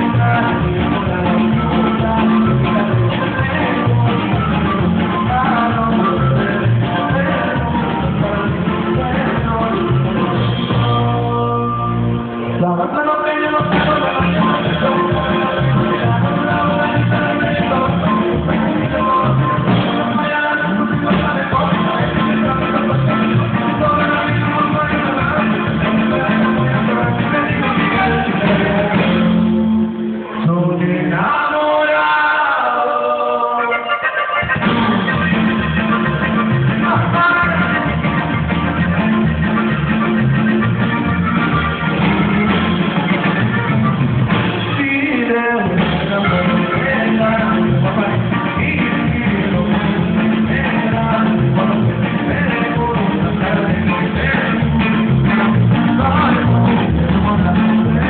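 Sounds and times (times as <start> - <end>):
band playing with singing: 0.0 - 58.0.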